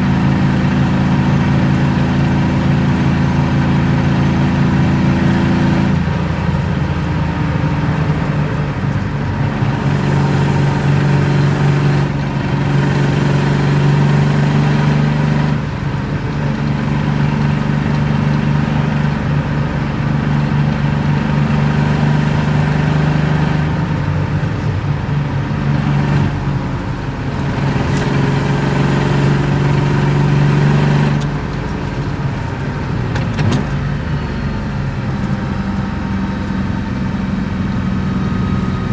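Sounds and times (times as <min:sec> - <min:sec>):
car engine while driving: 0:00.0 - 0:38.9.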